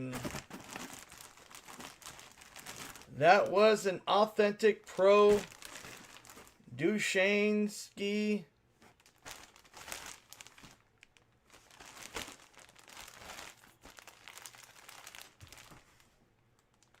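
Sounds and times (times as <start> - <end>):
plastic packaging crinkling: 0.0 - 3.6, 4.8 - 6.6, 8.8 - 17.0.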